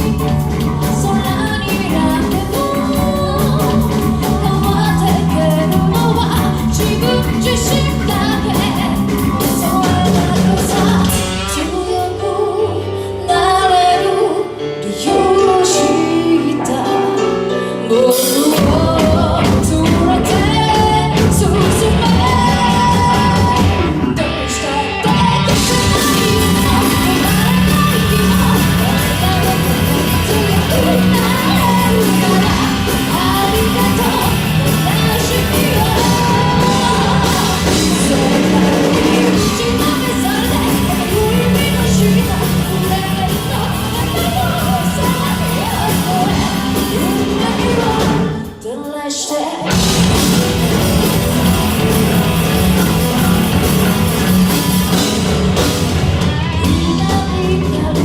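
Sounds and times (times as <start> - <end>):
person singing: 0.0 - 58.0
rock band playing live: 0.0 - 58.0.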